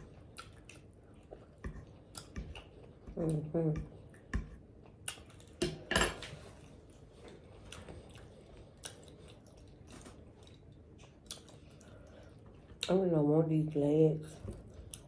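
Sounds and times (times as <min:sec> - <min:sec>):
chewing and lip smacking: 0:00.0 - 0:03.0, 0:04.0 - 0:05.6, 0:06.6 - 0:13.0, 0:14.6 - 0:15.0.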